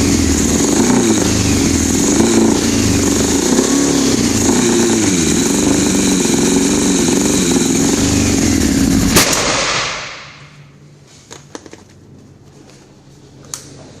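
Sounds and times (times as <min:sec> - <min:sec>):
motorcycle engine running: 0:00.0 - 0:09.2
sharp crack: 0:09.1 - 0:10.6.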